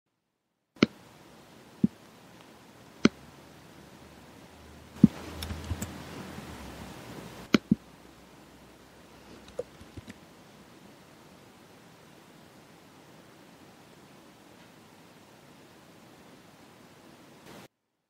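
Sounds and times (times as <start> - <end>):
low hiss: 0.2 - 17.8
rustling: 5.0 - 7.8, 9.0 - 10.3.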